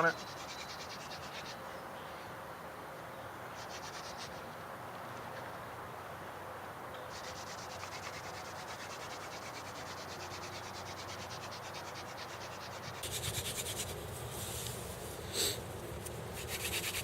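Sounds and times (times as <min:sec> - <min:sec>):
insect trilling: 0:10.8 - 0:17.0
wood grinding on wood: 0:13.0 - 0:17.0.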